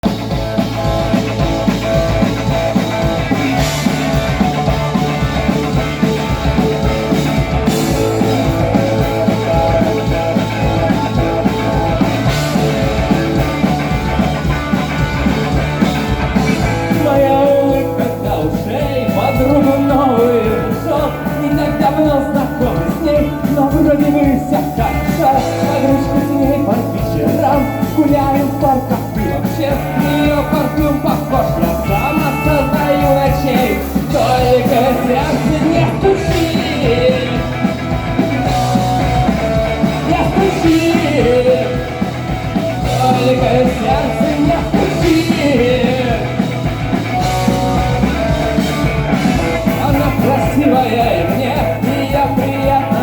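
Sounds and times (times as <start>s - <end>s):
melodic lead guitar line: 0.0s - 53.0s
rock band playing: 0.0s - 53.0s.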